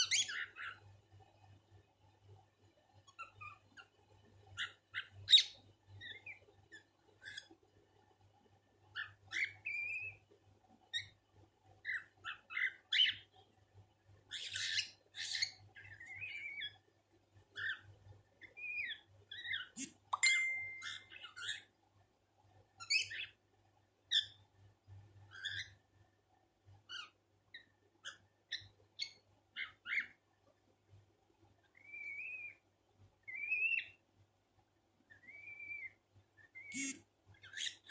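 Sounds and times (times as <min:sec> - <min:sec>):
bird squawking: 0:00.0 - 0:00.8, 0:04.6 - 0:07.5, 0:08.9 - 0:10.2, 0:11.8 - 0:13.3, 0:14.3 - 0:16.8, 0:17.6 - 0:21.7, 0:24.1 - 0:24.4, 0:25.3 - 0:25.8, 0:26.9 - 0:30.2, 0:31.8 - 0:32.6, 0:33.3 - 0:34.0, 0:35.1 - 0:37.9
cockatiel chirping and whistling: 0:00.0 - 0:00.8, 0:03.1 - 0:03.9, 0:04.6 - 0:07.5, 0:08.9 - 0:10.2, 0:10.9 - 0:11.2, 0:11.8 - 0:13.2, 0:14.3 - 0:16.8, 0:17.6 - 0:17.8, 0:18.4 - 0:21.7, 0:22.8 - 0:23.4, 0:24.1 - 0:24.4, 0:25.3 - 0:25.8, 0:26.9 - 0:30.2, 0:31.7 - 0:32.6, 0:33.2 - 0:34.0, 0:35.1 - 0:37.9.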